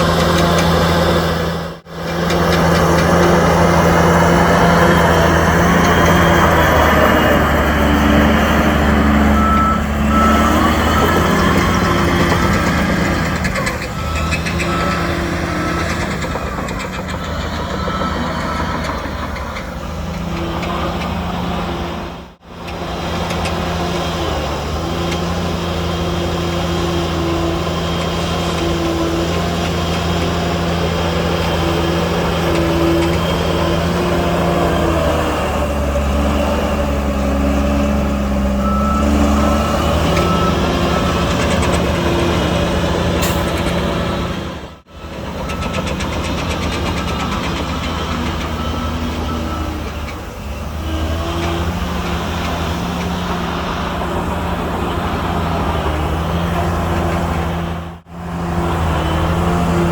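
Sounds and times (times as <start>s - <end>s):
heavy diesel machinery running: 0.0s - 59.9s
reversing beeper: 2.1s - 22.2s, 30.5s - 46.0s, 46.8s - 52.2s.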